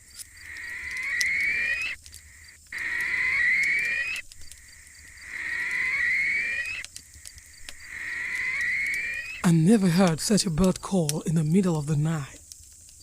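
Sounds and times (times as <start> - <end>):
long rising bird call: 0.3 - 2.0, 2.7 - 9.5.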